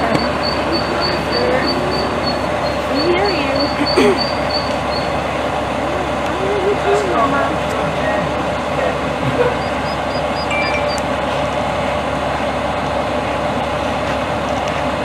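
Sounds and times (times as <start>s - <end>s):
faint high chirps: 0.0s - 5.2s, 9.6s - 11.1s
traffic rumble: 0.0s - 15.0s.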